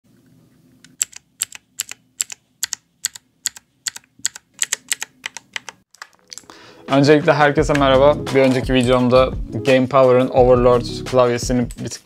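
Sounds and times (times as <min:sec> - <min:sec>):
mechanical keyboard clicking: 0:00.9 - 0:06.4.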